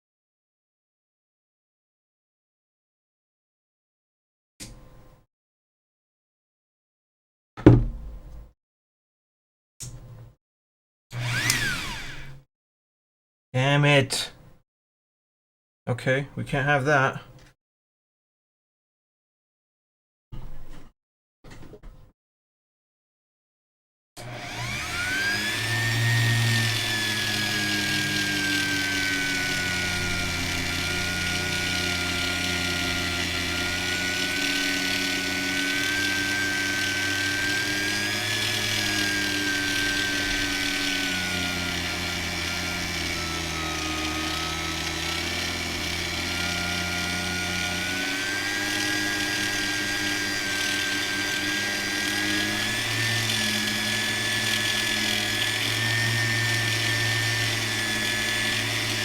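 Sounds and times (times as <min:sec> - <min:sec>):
power tool whining: 0:11.1 - 0:12.4, 0:24.2 - 0:59.0.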